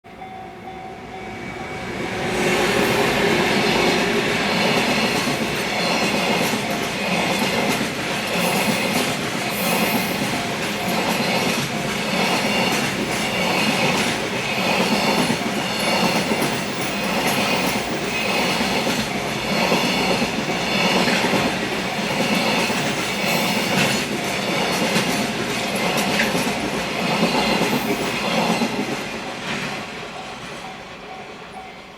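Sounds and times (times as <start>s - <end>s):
train wheels clattering over rail joints: 4.3s - 29.8s.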